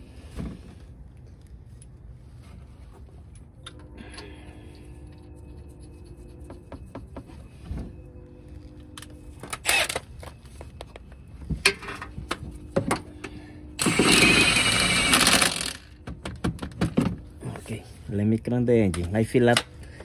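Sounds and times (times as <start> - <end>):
power tool running loudly: 13.8 - 15.9.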